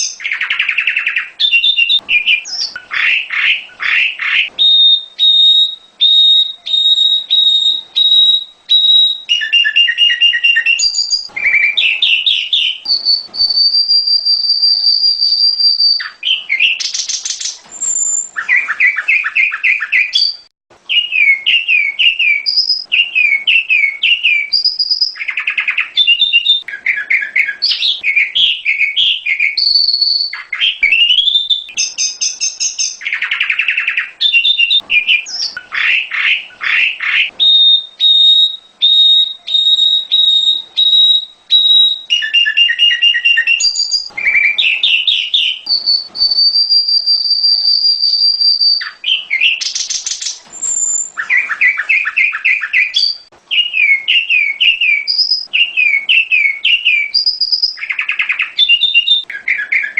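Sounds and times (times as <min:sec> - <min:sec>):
bird singing varied phrases: 0:00.0 - 0:59.9.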